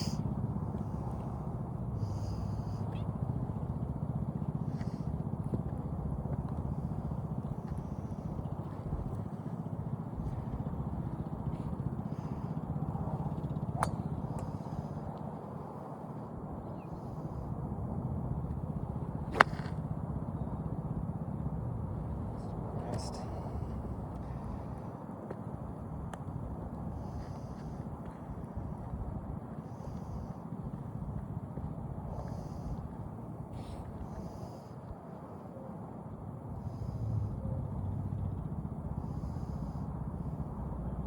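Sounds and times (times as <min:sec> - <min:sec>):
low outdoor rumble: 0:00.0 - 0:35.0, 0:35.8 - 0:41.0
golf clubs striking balls: 0:13.2 - 0:15.0, 0:19.3 - 0:19.8.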